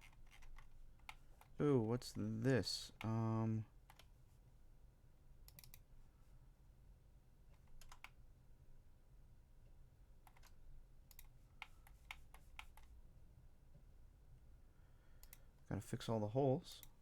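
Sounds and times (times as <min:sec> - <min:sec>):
keyboard and mouse clicks: 0:00.0 - 0:01.6, 0:03.9 - 0:04.1, 0:05.5 - 0:05.9, 0:07.5 - 0:08.2, 0:10.2 - 0:12.9
low steady hum: 0:00.5 - 0:17.0.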